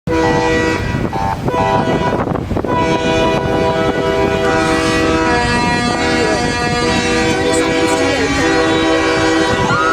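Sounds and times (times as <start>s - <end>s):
truck air horns: 0.1s - 9.9s.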